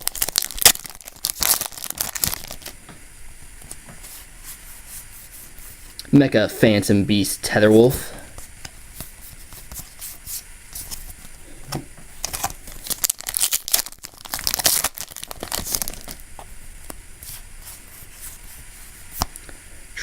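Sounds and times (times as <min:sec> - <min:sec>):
foil wrapper crinkling: 0:00.0 - 0:02.8, 0:12.1 - 0:18.6
trading cards rustling: 0:00.0 - 0:02.8, 0:07.6 - 0:11.4, 0:12.1 - 0:16.5.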